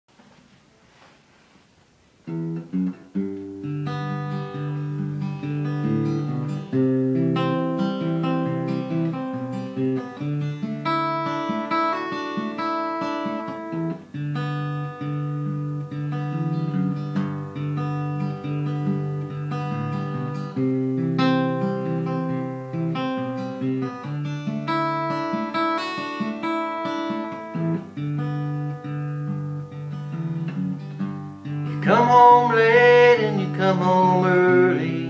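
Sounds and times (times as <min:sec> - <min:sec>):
acoustic guitar playing: 0:00.1 - 0:35.0.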